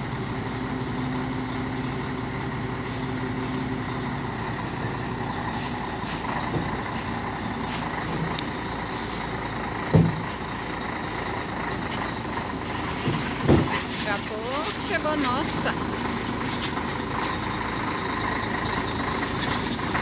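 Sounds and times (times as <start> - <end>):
diesel truck engine running: 0.0 - 20.0
loud thumps: 9.9 - 10.3, 13.0 - 13.9.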